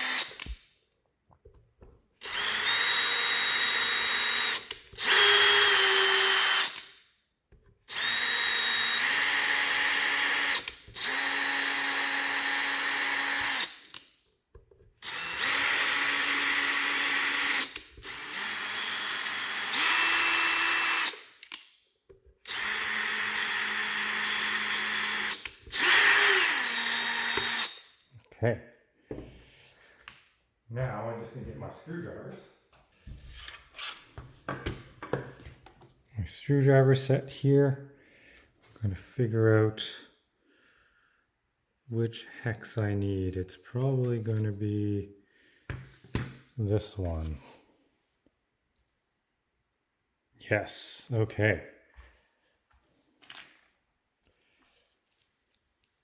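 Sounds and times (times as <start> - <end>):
power drill driving a tap: 22.4 - 27.8.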